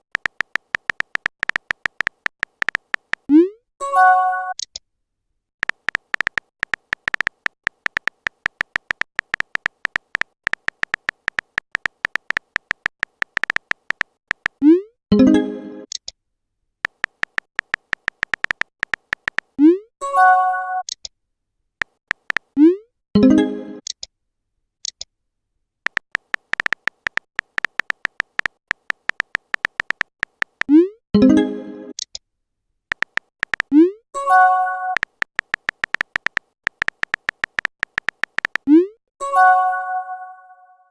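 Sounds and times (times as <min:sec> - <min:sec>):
phone keyboard typing clicks: 0:00.0 - 0:03.3, 0:05.6 - 0:14.6, 0:16.8 - 0:19.6, 0:21.8 - 0:22.6, 0:25.9 - 0:30.8, 0:32.9 - 0:33.8, 0:34.9 - 0:38.7.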